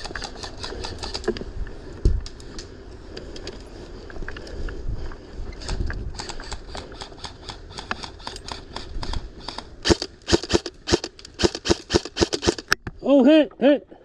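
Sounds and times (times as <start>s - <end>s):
airsoft guns firing: 9.8s - 12.7s.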